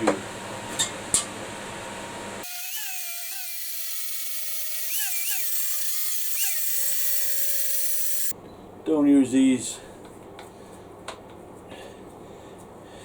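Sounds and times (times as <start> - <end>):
power tool motor whining: 2.4 - 8.3.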